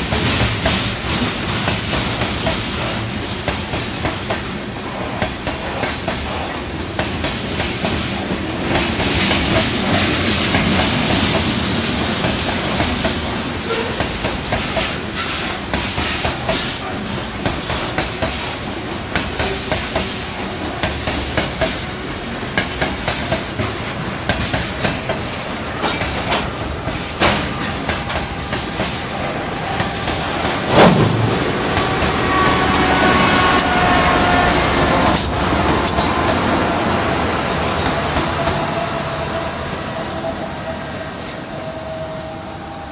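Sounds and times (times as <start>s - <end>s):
train wheels clacking on rails: 0.0s - 42.4s
loud bang: 30.7s - 31.8s.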